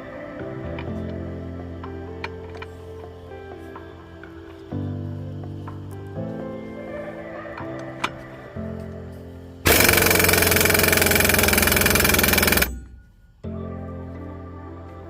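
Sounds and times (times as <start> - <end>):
loud burst of noise: 9.7 - 12.9.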